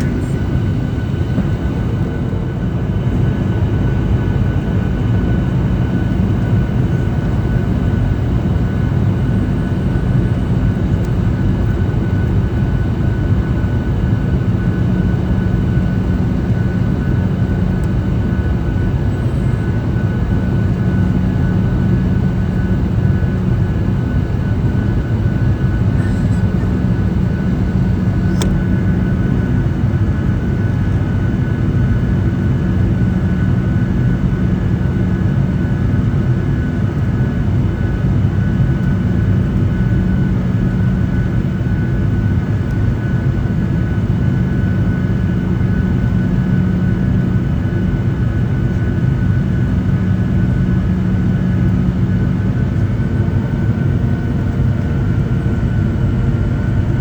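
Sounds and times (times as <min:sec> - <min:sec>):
jet engine cabin rumble: 0:00.0 - 0:57.0
thin steady whine: 0:00.0 - 0:57.0
brief click: 0:28.2 - 0:28.6.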